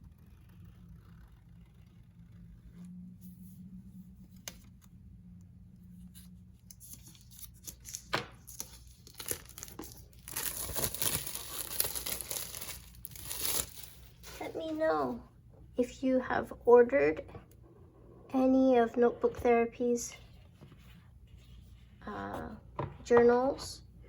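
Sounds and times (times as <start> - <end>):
wrapping tearing and rustling: 6.7 - 14.6.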